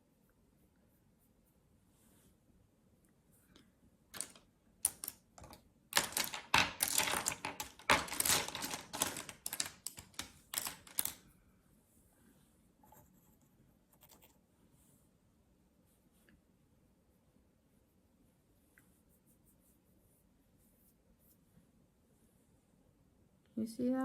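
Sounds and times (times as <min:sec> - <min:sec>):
plastic clattering and rustling: 0:04.2 - 0:11.2
plastic makeup items clicking: 0:04.2 - 0:11.2.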